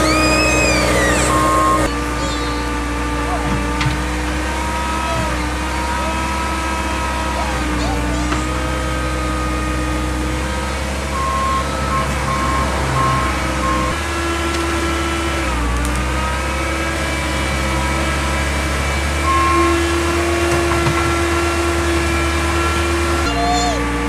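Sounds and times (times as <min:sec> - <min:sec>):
reversing alarm beeping: 0:00.0 - 0:01.9, 0:11.0 - 0:14.0
heavy equipment engine running: 0:00.0 - 0:24.0.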